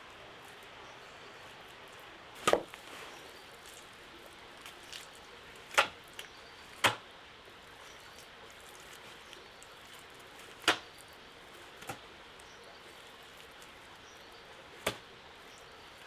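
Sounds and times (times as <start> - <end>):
blade chopping into wood: 2.4 - 2.7, 6.8 - 7.0, 14.8 - 15.1.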